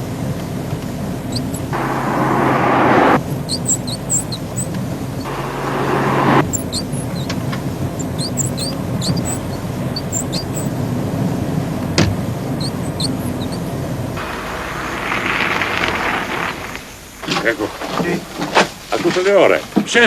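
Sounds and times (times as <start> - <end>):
car engine humming: 0.0 - 18.9
short high-pitched squeaks: 1.3 - 10.8, 12.5 - 17.6
rushing noise: 1.3 - 17.2.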